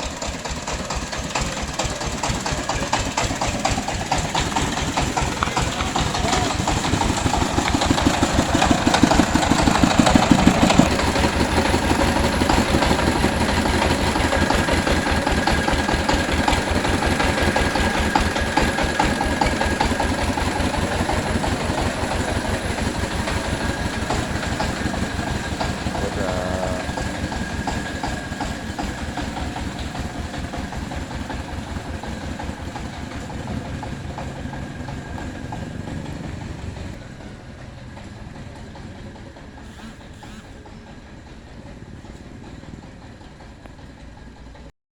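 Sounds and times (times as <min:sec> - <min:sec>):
engine chugging: 0:00.0 - 0:44.7.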